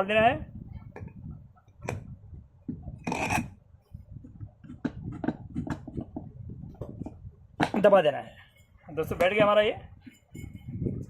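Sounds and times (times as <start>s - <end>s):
metal rasping scrape: 3.0s - 3.6s.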